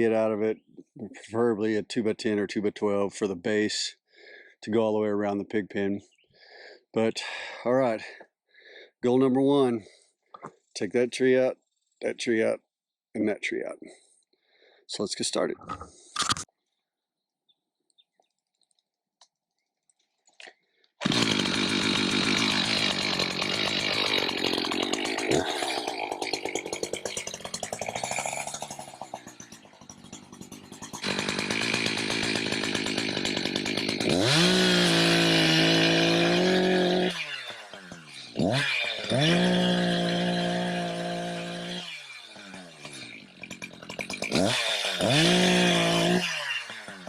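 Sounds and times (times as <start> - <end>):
chainsaw cutting wood: 21.0 - 47.0.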